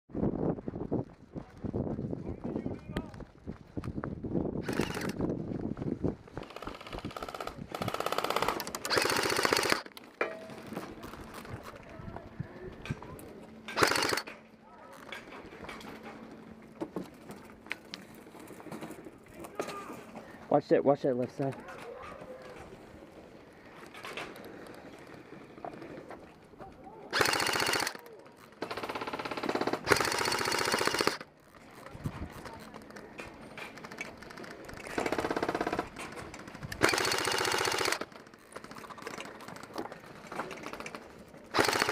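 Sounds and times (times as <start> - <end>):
airsoft guns firing bursts: 4.6 - 5.2, 6.4 - 9.9, 13.7 - 14.3, 27.1 - 31.3, 34.2 - 39.5, 40.5 - 41.9.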